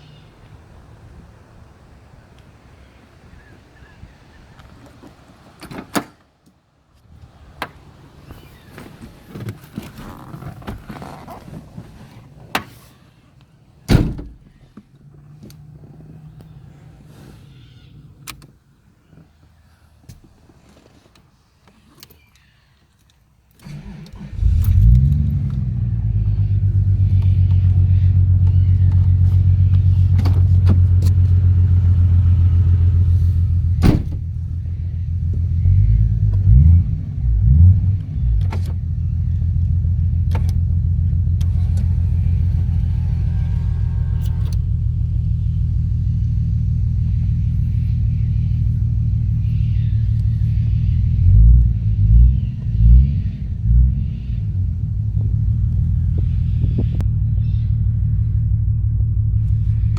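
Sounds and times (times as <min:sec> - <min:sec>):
turbo car engine revving and idling: 0:23.6 - 0:59.9.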